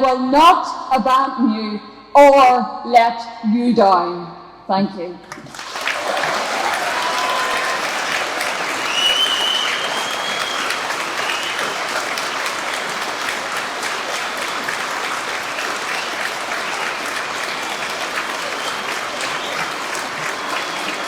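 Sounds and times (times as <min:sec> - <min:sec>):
crowd applauding: 0:05.3 - 0:21.0.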